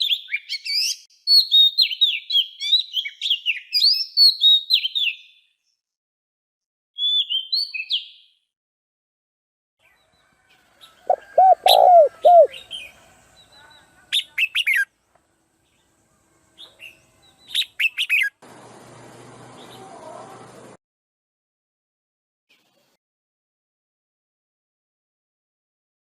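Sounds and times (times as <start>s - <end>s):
high falling bird chirps: 11.0s - 13.8s
low arched bird notes: 11.1s - 13.4s.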